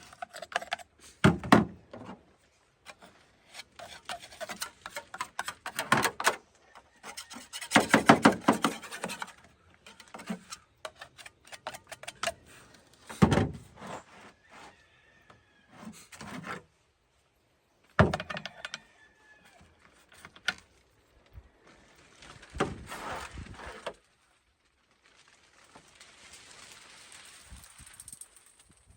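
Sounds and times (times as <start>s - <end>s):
plastic and metal parts knocking: 0.0s - 2.2s, 3.8s - 6.4s, 7.0s - 12.4s, 18.0s - 18.8s.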